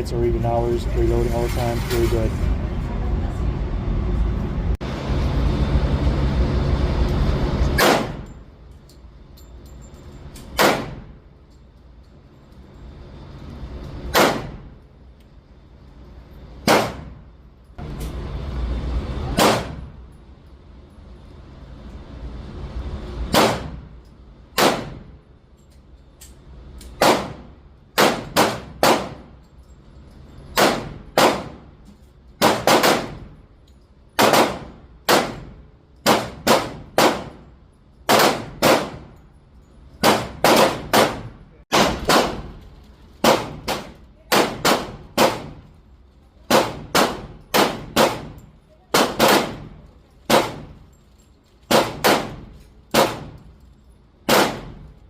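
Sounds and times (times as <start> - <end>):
handgun shots: 7.8 - 8.2, 10.6 - 11.0, 14.1 - 14.6, 16.7 - 17.2, 19.4 - 19.8, 23.3 - 23.8, 24.6 - 25.0, 27.0 - 27.4, 28.0 - 29.2, 30.6 - 31.6, 32.4 - 33.2, 34.2 - 35.5, 36.1 - 37.4, 38.1 - 39.1, 40.0 - 42.5, 46.5 - 48.4, 51.7 - 53.4, 54.3 - 54.8.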